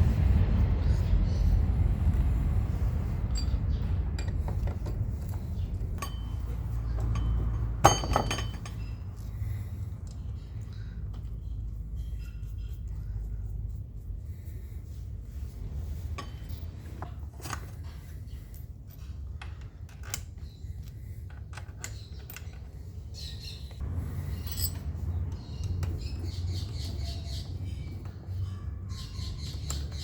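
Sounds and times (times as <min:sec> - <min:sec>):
steady low hum: 0:00.0 - 0:19.2
metallic clinks of hand tools: 0:06.0 - 0:09.0, 0:24.3 - 0:25.0.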